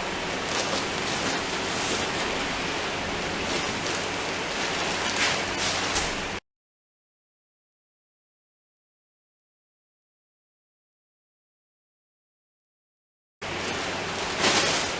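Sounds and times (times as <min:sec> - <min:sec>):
faint motor hum: 0:00.0 - 0:06.4, 0:13.4 - 0:14.9.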